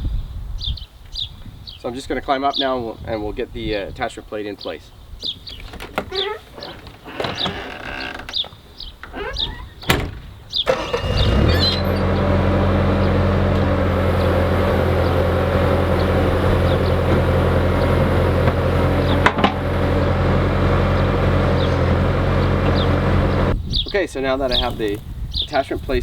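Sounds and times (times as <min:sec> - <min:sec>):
skid steer engine idling: 0:10.7 - 0:23.6.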